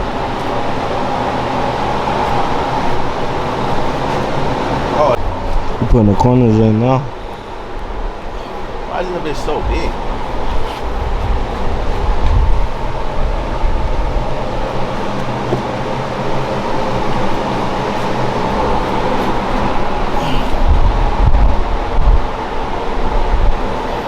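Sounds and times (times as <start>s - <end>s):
machine hum with high whine: 0.0s - 24.0s
low rumble: 5.2s - 23.6s.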